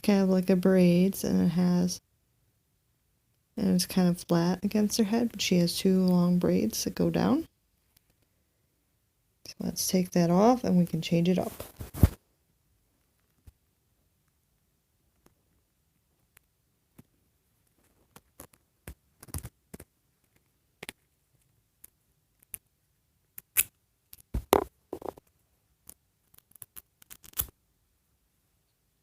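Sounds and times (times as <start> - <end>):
plastic doll clicks and rubbing: 16.2 - 22.7, 23.4 - 27.6.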